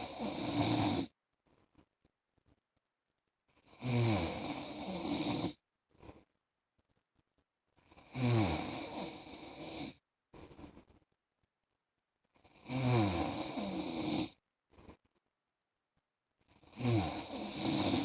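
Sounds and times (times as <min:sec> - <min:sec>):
man snoring: 0:00.0 - 0:01.1, 0:03.8 - 0:05.6, 0:08.0 - 0:09.9, 0:12.6 - 0:14.4, 0:16.7 - 0:18.0.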